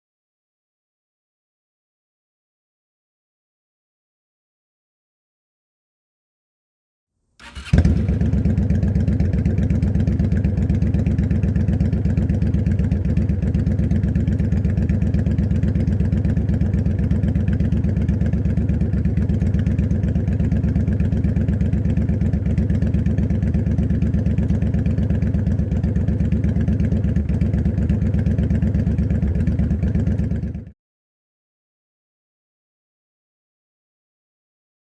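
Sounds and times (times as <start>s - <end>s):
motorcycle engine idling: 7.4s - 30.7s.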